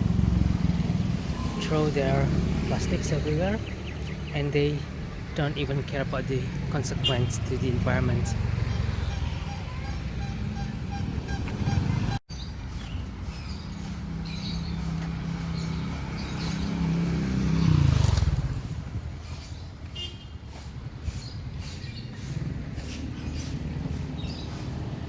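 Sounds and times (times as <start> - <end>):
vehicle engine passing: 0.0 - 4.1, 13.2 - 19.6, 20.5 - 25.0.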